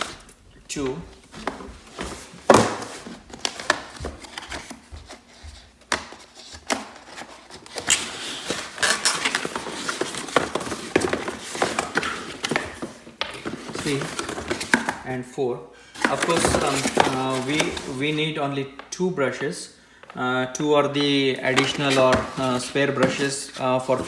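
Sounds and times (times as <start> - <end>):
plastic crinkling and rustling: 0.0 - 15.1, 15.9 - 18.3, 21.0 - 24.0
plastic parts tapping and knocking: 5.8 - 15.0, 16.0 - 17.9.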